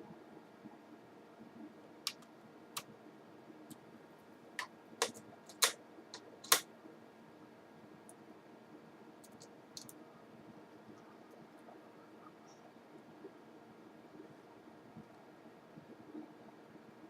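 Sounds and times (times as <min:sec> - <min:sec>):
sharp clicks and taps on laptop: 0:04.6 - 0:06.6, 0:09.2 - 0:10.0.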